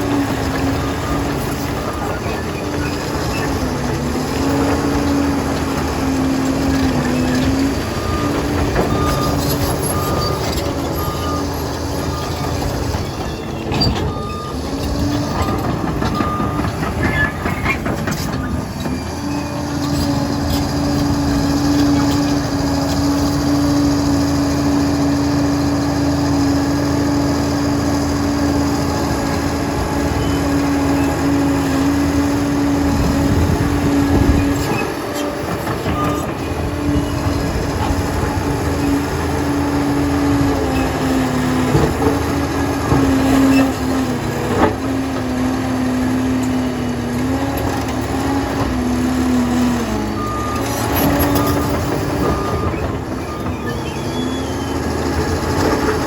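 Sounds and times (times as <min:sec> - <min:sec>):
reversing alarm beeping: 0:00.0 - 0:05.0, 0:06.6 - 0:21.5, 0:32.8 - 0:39.3, 0:49.7 - 0:55.9
dozer diesel engine and tracks: 0:00.0 - 0:56.0.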